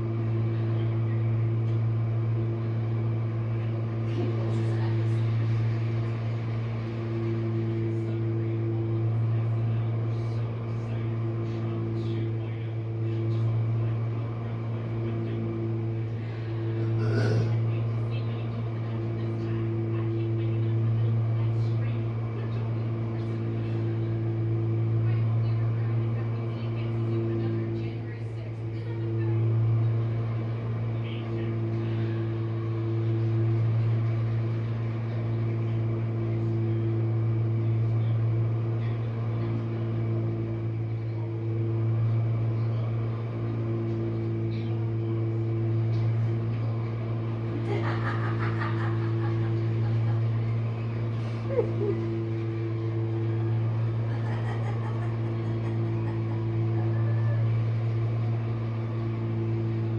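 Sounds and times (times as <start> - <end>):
dishwasher motor hum: 0.0 - 59.9.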